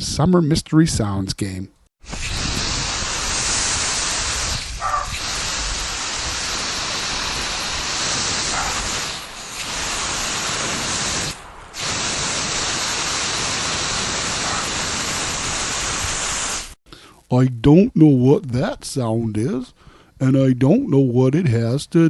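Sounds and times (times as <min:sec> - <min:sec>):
hose nozzle spraying water: 0:02.0 - 0:16.8.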